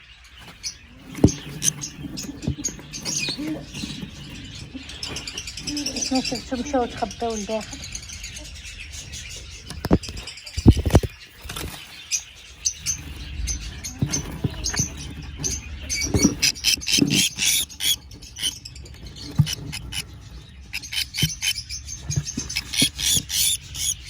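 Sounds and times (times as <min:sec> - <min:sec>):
baby birds cheeping: 0:00.0 - 0:24.0
knocks and rustles of box: 0:00.4 - 0:05.6.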